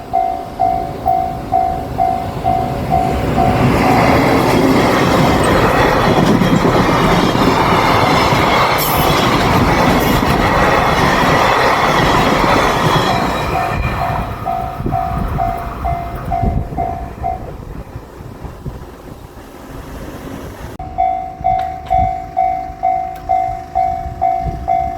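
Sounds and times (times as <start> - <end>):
level crossing bell ringing: 0.0 - 4.3, 20.8 - 24.9
train rumble and wheels clacking: 0.0 - 24.9.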